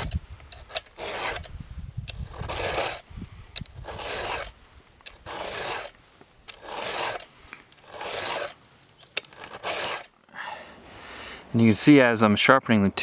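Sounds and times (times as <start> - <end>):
file rasping on chain: 0.0 - 1.5, 2.1 - 3.0, 3.7 - 8.6, 9.2 - 10.1.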